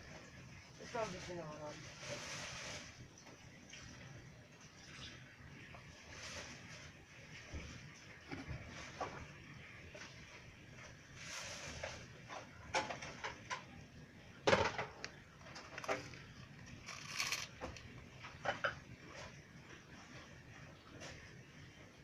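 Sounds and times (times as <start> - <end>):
short hissing rustle: 2.0 - 3.0
rustling: 15.4 - 18.0.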